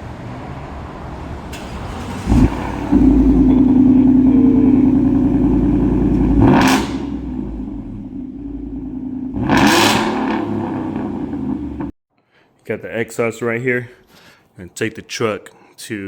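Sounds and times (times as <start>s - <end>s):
car engine exhaust revving: 1.5s - 11.9s.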